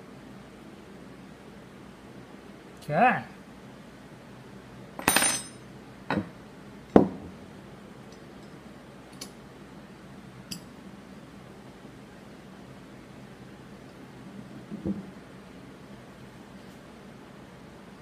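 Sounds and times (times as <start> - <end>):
metal parts clinking on a workbench: 5.0 - 5.6.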